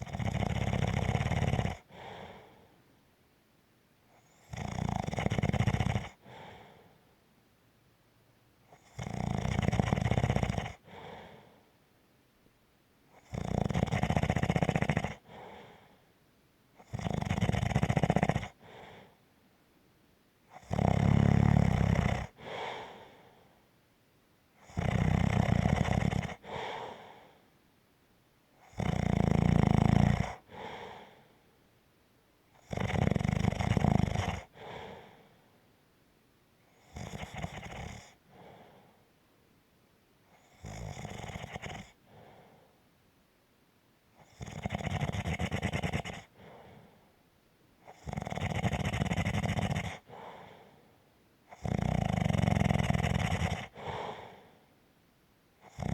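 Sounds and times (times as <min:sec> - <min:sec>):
person snoring: 0:00.0 - 0:02.5, 0:13.2 - 0:15.7, 0:16.9 - 0:19.0, 0:20.6 - 0:23.0, 0:24.6 - 0:27.2, 0:32.6 - 0:35.1, 0:36.8 - 0:38.6, 0:40.4 - 0:42.0, 0:44.2 - 0:46.8, 0:47.9 - 0:50.6, 0:51.5 - 0:54.4, 0:55.6 - 0:55.9.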